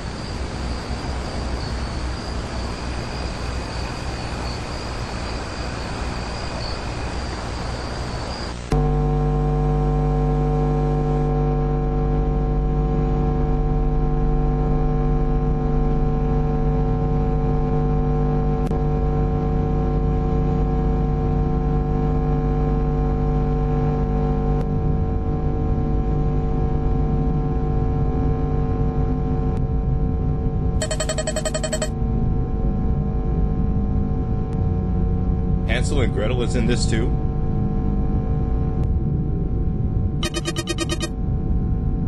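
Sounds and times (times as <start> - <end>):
steady drone of held tones: 0.0 - 15.3, 30.8 - 31.9, 40.1 - 41.7.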